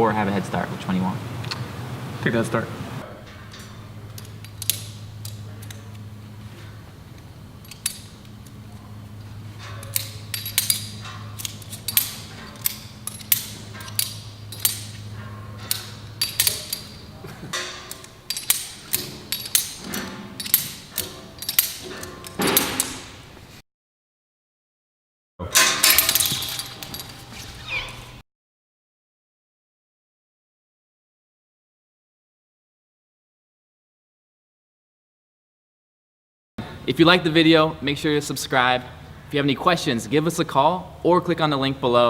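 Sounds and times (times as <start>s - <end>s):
steady low hum: 0.0s - 23.6s
carabiner gates snapping shut: 3.3s - 23.3s, 25.5s - 27.8s.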